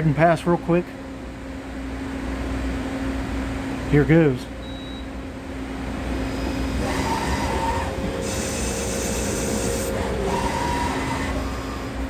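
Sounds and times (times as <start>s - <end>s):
lathe gear whine: 5.8s - 12.0s.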